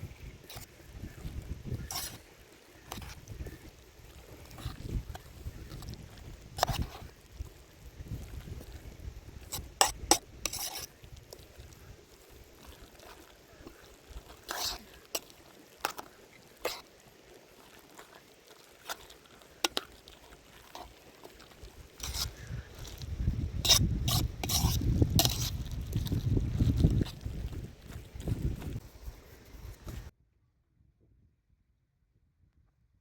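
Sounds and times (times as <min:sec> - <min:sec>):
cookware clicks and scrapes: 0:06.6 - 0:07.1, 0:09.4 - 0:10.9, 0:12.6 - 0:16.8, 0:18.8 - 0:27.3.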